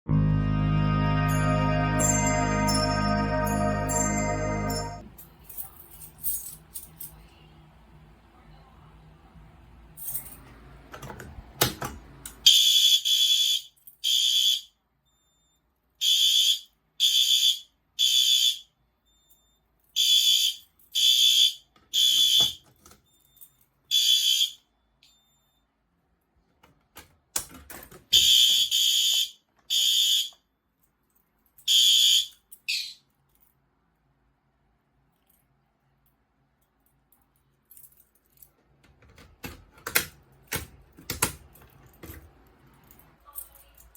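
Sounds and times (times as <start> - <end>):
fire alarm horns: 0.1 - 5.0, 12.5 - 14.8, 16.0 - 18.7, 20.0 - 22.6, 23.9 - 24.7, 28.1 - 30.4, 31.7 - 32.4.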